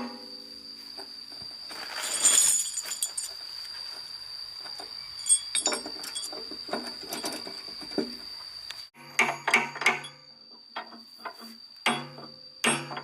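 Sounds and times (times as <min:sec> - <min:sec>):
rustle: 0:00.0 - 0:08.9
high-pitched insect drone: 0:00.0 - 0:13.0
sharp clinks: 0:01.7 - 0:03.4, 0:04.8 - 0:06.5.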